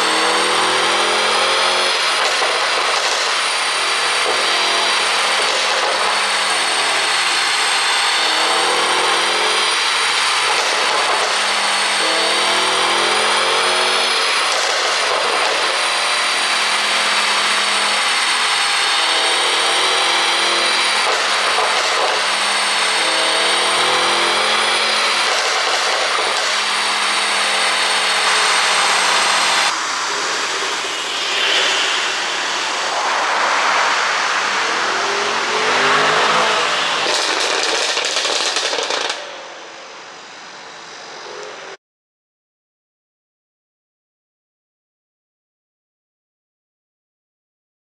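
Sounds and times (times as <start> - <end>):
car engine revving: 0.0 - 41.8
exhaust crackles and pops: 13.6 - 16.0, 24.7 - 26.8, 36.2 - 39.4.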